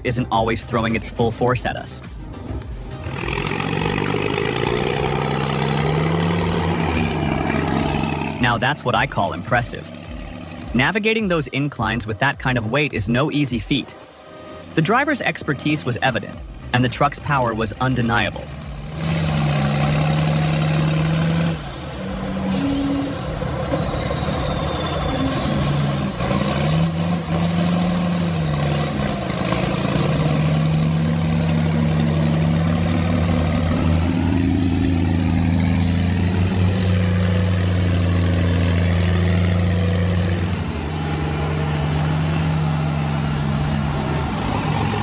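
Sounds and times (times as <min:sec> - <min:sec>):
heavy truck engine under load: 0:02.4 - 0:10.8, 0:17.8 - 0:45.0.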